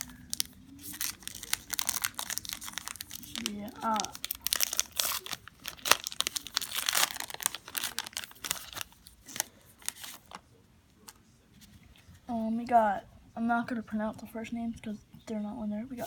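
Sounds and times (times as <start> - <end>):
wrapper being torn and crinkled: 0.0 - 10.4.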